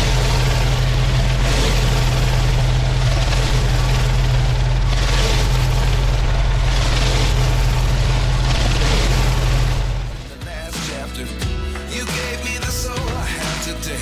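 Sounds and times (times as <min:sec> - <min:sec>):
pressure washer spraying tarmac: 0:00.0 - 0:13.7
music: 0:10.1 - 0:14.0.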